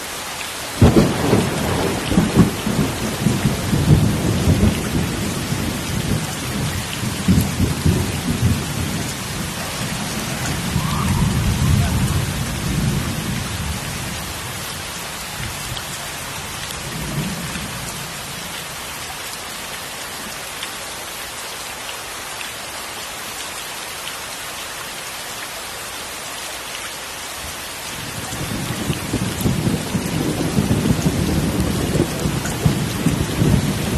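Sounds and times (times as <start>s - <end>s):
heavy rain: 0.0s - 33.9s
rolling thunder: 0.8s - 14.2s, 28.1s - 33.9s.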